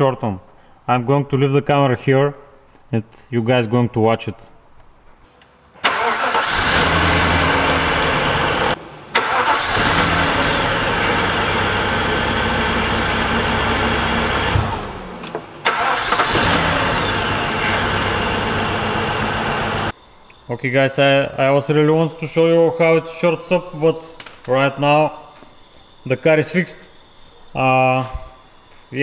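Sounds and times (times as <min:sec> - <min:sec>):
car engine cranking and running: 0:05.8 - 0:20.0, 0:23.1 - 0:29.0.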